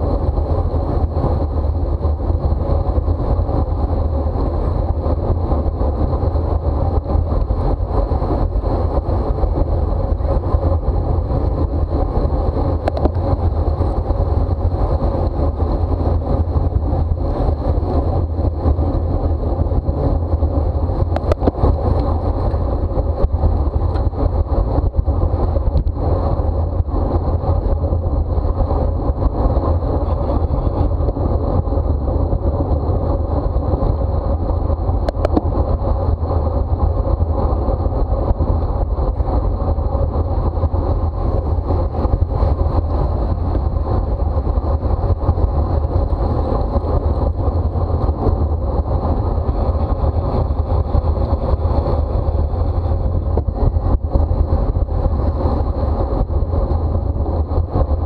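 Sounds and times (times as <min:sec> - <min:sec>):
bicycle tyres running: 0:00.0 - 0:58.0
loud wind rushing over microphone: 0:00.0 - 0:58.0.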